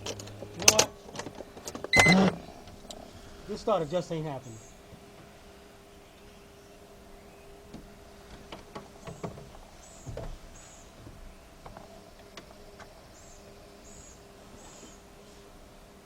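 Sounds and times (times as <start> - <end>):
light clicks and knocks: 0.0 - 3.0.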